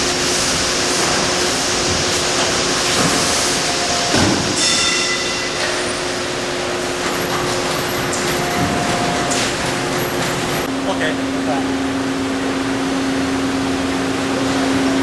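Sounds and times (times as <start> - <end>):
machine humming: 0.0 - 15.0
machine clunk: 1.0 - 6.1.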